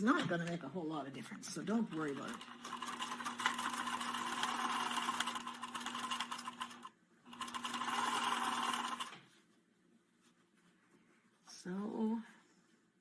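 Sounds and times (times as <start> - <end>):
sewing machine stitching: 1.7 - 9.2.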